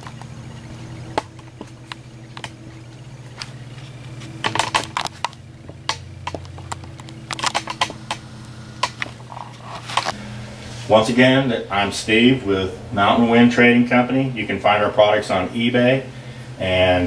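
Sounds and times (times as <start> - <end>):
low hum: 0.0 - 17.0
sharp clicks and knocks: 1.1 - 2.7, 4.2 - 10.2.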